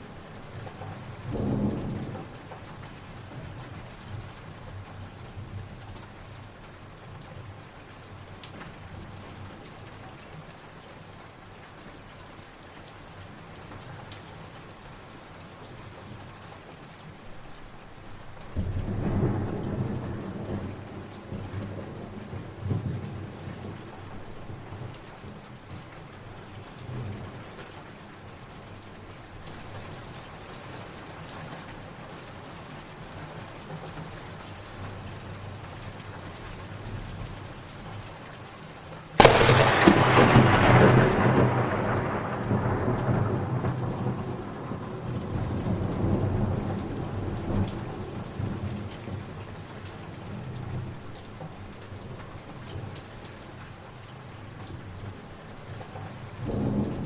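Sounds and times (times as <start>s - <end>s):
steady rain falling: 0.0s - 57.0s
rolling thunder: 39.2s - 48.0s.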